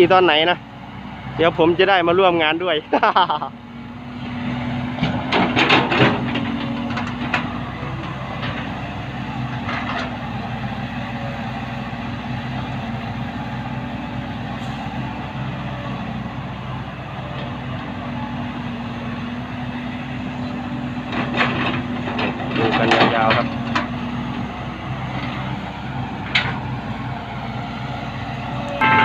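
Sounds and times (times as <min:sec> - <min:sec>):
heavy diesel engine running: 0:00.0 - 0:29.0
knocks and clatters: 0:05.0 - 0:07.5, 0:21.0 - 0:24.0.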